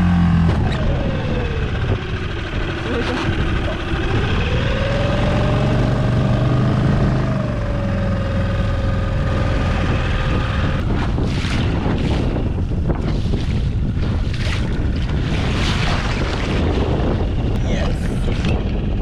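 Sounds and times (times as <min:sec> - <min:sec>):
outboard motor droning: 0:00.0 - 0:19.0
water noise: 0:00.0 - 0:19.0
wind: 0:00.0 - 0:19.0.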